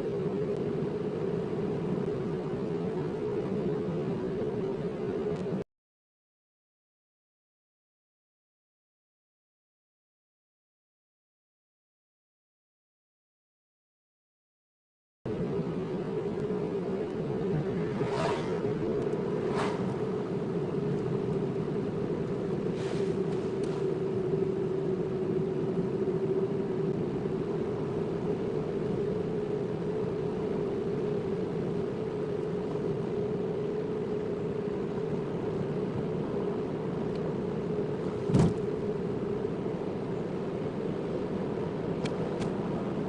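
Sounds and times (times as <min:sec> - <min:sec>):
car engine and road drone: 0:00.0 - 0:05.6, 0:15.3 - 0:43.0.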